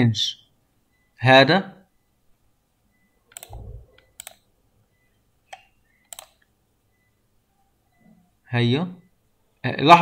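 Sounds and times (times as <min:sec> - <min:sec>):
computer mouse clicking: 0:03.3 - 0:04.4, 0:05.5 - 0:06.5
soft low thud: 0:03.5 - 0:04.0.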